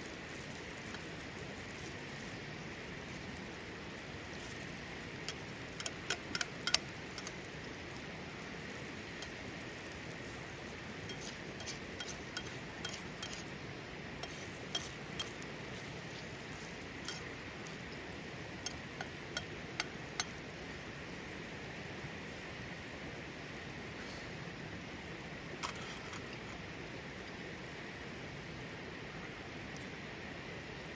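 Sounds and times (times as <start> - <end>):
meat sizzling on a griddle: 0.0 - 20.5
sharp pops and crackles: 4.2 - 7.6.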